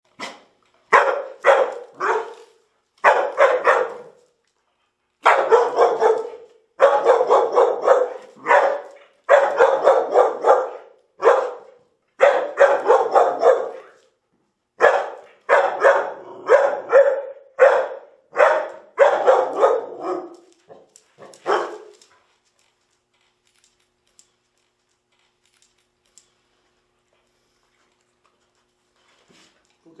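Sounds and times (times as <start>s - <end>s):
dog barking: 0.2s - 4.2s, 5.2s - 14.0s, 14.8s - 22.0s.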